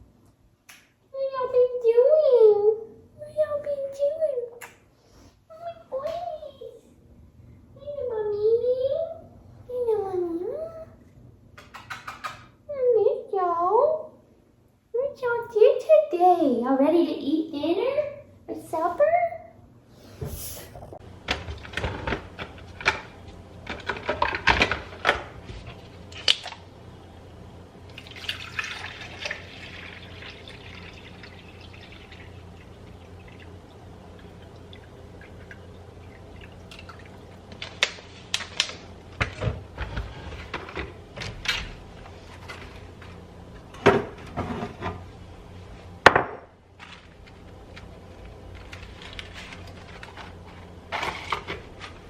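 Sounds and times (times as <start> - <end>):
something pouring: 27.9 - 37.7.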